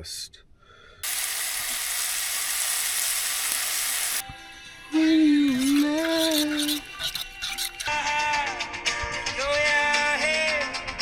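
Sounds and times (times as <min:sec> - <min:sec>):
food sizzling in a frying pan: 0:01.0 - 0:04.2.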